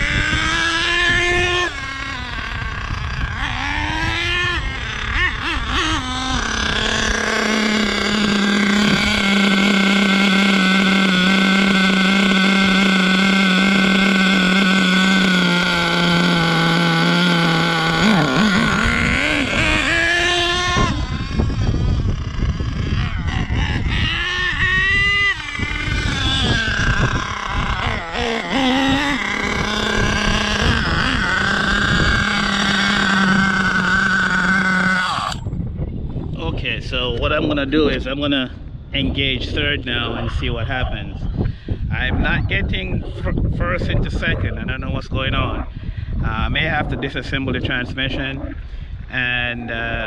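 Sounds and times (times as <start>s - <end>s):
model truck engine revving: 0.0s - 35.5s.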